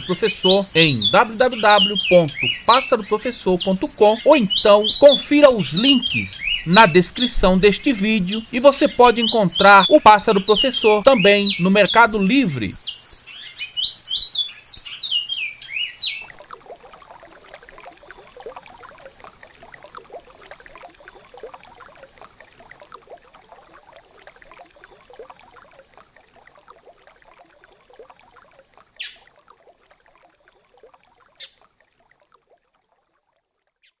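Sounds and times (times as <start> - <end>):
finch singing whistled notes: 0.0 - 16.3
babbling river water: 0.0 - 33.9.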